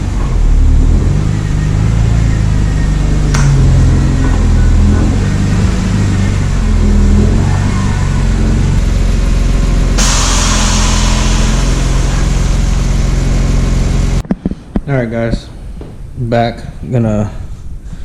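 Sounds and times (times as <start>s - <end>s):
car engine revving: 0.0s - 14.2s
loud rushing hiss: 8.8s - 14.2s.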